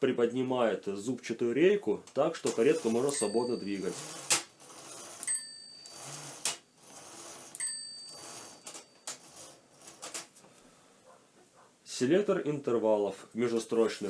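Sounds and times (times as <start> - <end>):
typewriter carriage clacking: 2.4 - 10.3
typewriter margin bell dinging: 2.4 - 10.3.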